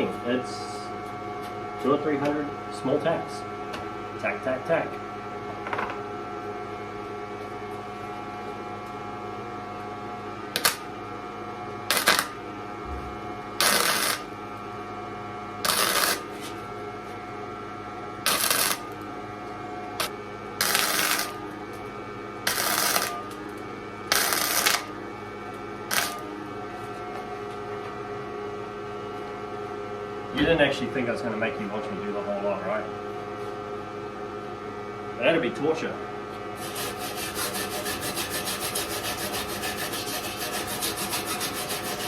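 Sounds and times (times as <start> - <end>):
steady hum: 0.0 - 42.0
welder arc bursts: 10.6 - 10.8, 11.9 - 12.4, 13.6 - 14.3, 15.6 - 16.3, 18.2 - 19.0, 20.0 - 21.4, 22.5 - 23.2, 24.1 - 24.9, 25.9 - 26.2.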